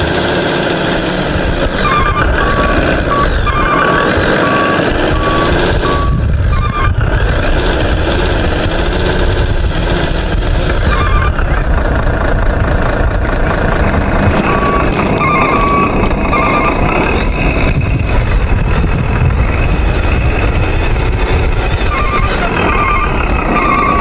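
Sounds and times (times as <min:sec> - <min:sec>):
toy truck motor and gears rumbling: 0:00.0 - 0:24.0
reversing beeps: 0:01.4 - 0:11.6, 0:14.1 - 0:18.3, 0:21.5 - 0:24.0.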